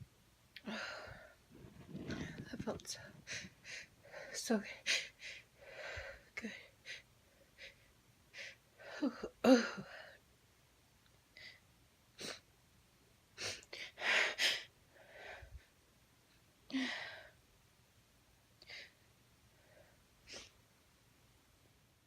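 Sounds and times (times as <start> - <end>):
breaths: 0.6 - 1.4, 2.0 - 9.1, 13.8 - 15.7, 16.7 - 17.4.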